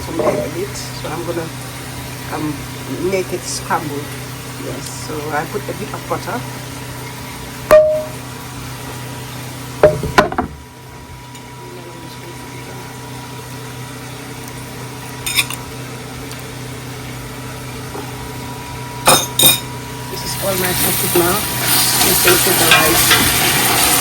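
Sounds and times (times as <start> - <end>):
low kitchen hum: 0.0 - 24.0
utensils clinking against a pan: 15.3 - 15.6, 19.1 - 24.0.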